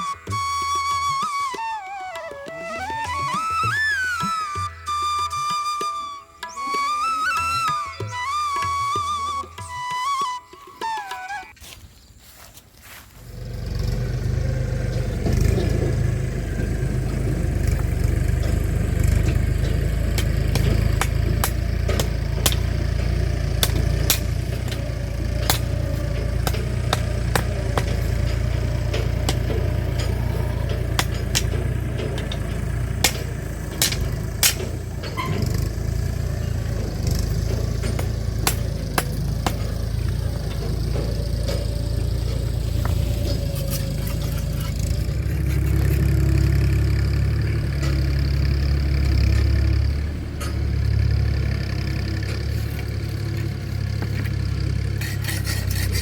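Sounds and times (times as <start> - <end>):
engine rumbling: 0.0 - 56.0
sharp clicks and rattles: 13.4 - 56.0.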